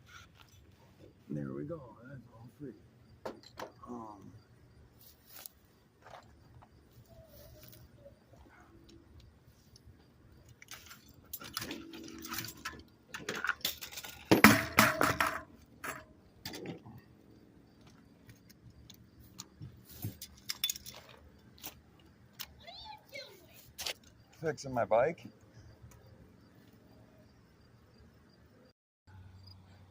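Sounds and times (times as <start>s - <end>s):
metal bicycle parts clinking: 10.4s - 17.0s, 18.4s - 21.7s.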